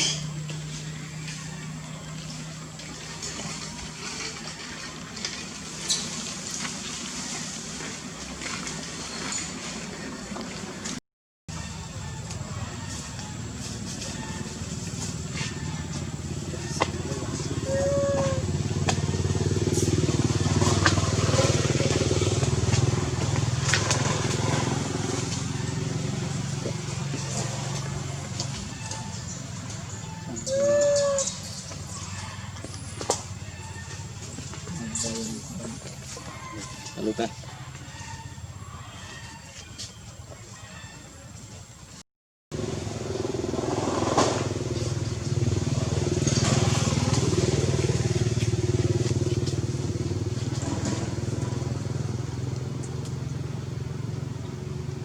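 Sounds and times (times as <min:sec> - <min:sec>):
small motor engine running: 0:11.5 - 0:38.6, 0:42.5 - 0:55.0.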